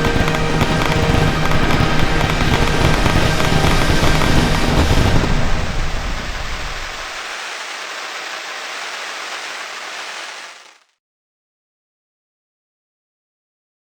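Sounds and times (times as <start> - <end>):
low rumbling booms: 0.0 - 7.2
fireworks crackling hiss: 0.0 - 10.8.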